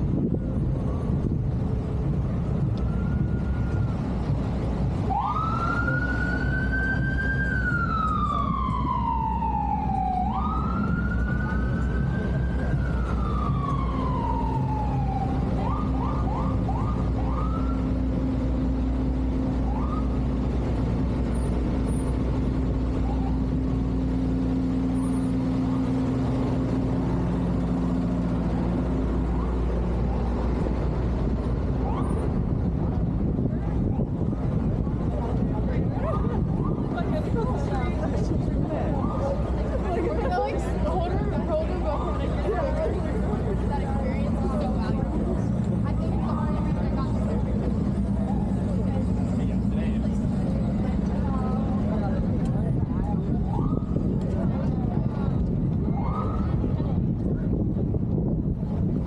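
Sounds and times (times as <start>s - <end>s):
city traffic rumble: 0.0s - 59.0s
siren wailing: 2.6s - 4.2s, 5.0s - 18.2s, 19.4s - 20.8s, 22.9s - 32.7s, 53.2s - 54.1s, 55.8s - 56.7s
siren yelps: 5.1s - 18.0s, 19.6s - 20.2s, 23.0s - 23.6s, 31.8s - 32.5s, 55.8s - 56.7s.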